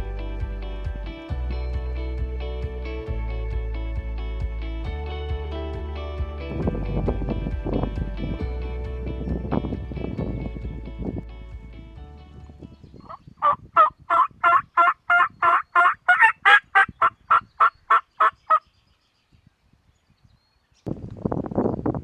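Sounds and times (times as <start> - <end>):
background music: 0.0 - 12.7
turkey yelps: 13.1 - 18.6.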